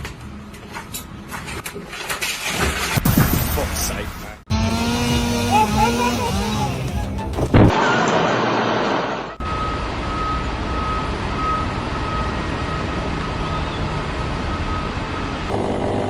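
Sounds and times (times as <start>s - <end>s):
heavy machinery running: 4.5s - 10.3s, 14.8s - 16.0s.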